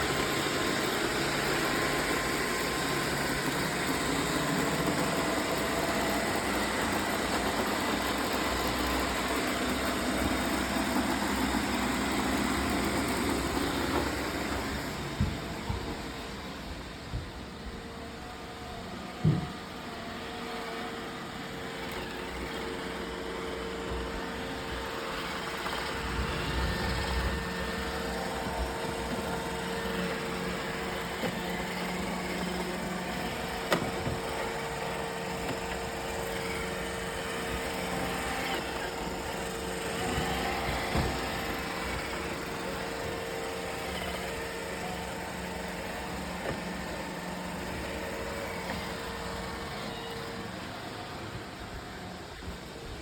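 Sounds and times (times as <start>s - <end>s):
robot vacuum motor hum: 0.0s - 53.0s
vacuum brush noise: 0.0s - 53.0s.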